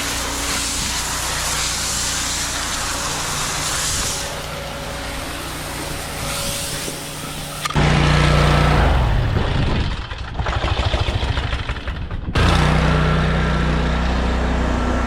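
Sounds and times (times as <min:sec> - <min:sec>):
water spray hissing: 0:00.0 - 0:07.8
pressure washer engine running: 0:00.0 - 0:15.0.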